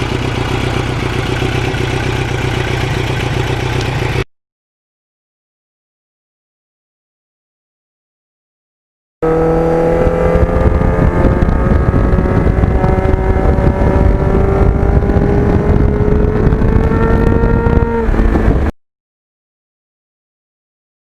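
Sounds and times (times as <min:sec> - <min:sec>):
motorcycle engine cruising: 0:00.0 - 0:04.3, 0:09.2 - 0:18.8
wind rumble: 0:09.2 - 0:18.7.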